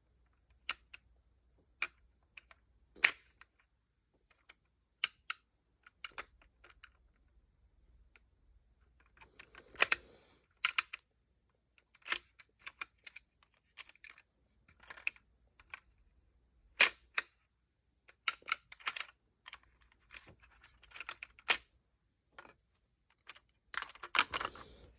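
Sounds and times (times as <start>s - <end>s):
plastic toy bricks clicking: 0.4s - 1.0s, 1.8s - 3.6s, 4.3s - 7.0s, 9.0s - 11.0s, 11.8s - 15.9s, 16.8s - 17.4s, 18.1s - 21.7s, 22.4s - 24.9s.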